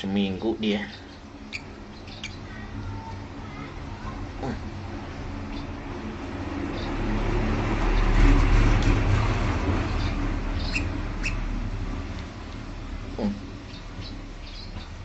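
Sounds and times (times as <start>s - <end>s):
vehicle passing close by: 4.7s - 13.0s.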